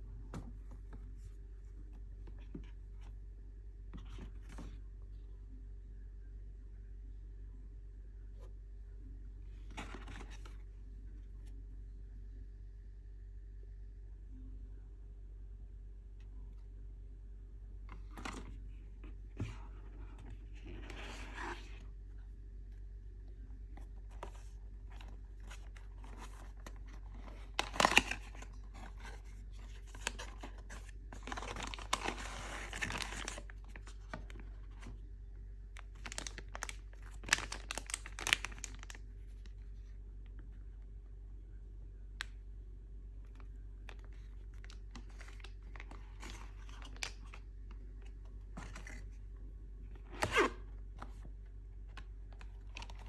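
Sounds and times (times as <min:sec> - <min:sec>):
steady low hum: 0:00.0 - 0:53.0
wrapping tearing and crinkling: 0:24.2 - 0:34.8, 0:35.8 - 0:39.0, 0:43.9 - 0:47.4, 0:52.4 - 0:53.0.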